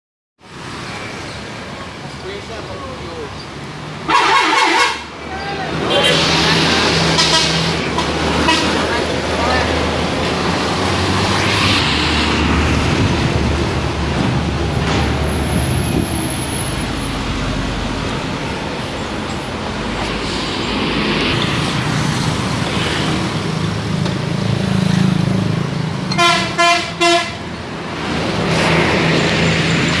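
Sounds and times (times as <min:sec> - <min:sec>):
bus engine: 0:00.4 - 0:30.0
heavy vehicles passing: 0:00.4 - 0:30.0
bus horn toots: 0:04.1 - 0:05.1, 0:05.8 - 0:09.0, 0:26.1 - 0:27.5.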